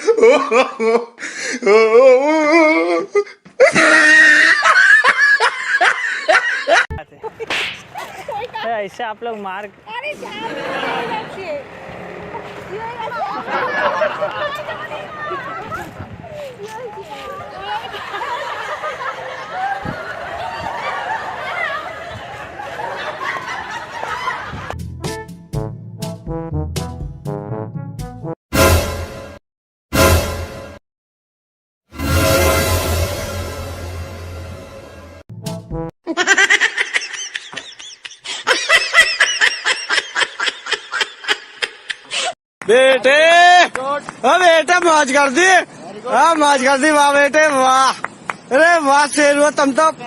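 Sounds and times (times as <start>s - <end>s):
people laughing and chuckling: 0.0s - 8.6s, 10.1s - 11.6s, 12.4s - 24.8s, 36.1s - 42.4s.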